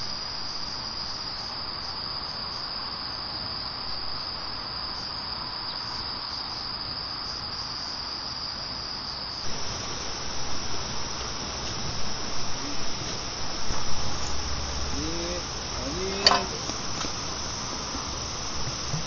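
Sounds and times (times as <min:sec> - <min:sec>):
crickets chirping: 0:00.0 - 0:19.0
low uneven bumps: 0:09.5 - 0:19.0.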